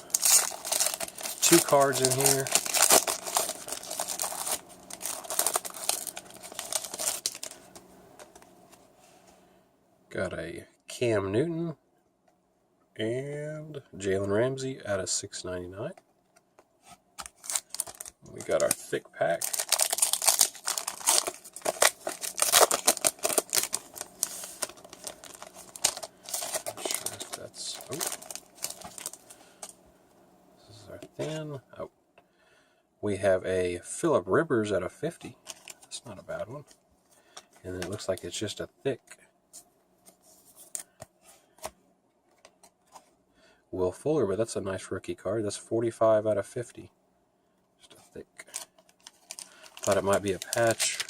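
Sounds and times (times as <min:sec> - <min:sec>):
plastic wrapper crinkling: 0:00.0 - 0:08.4, 0:17.2 - 0:29.8, 0:35.4 - 0:36.0, 0:48.4 - 0:51.0.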